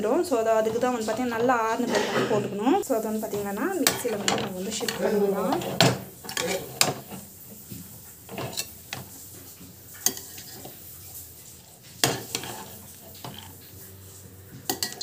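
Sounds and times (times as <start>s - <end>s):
spoon scraping and clinking on pan: 3.2s - 11.2s, 12.0s - 13.8s, 14.5s - 15.0s.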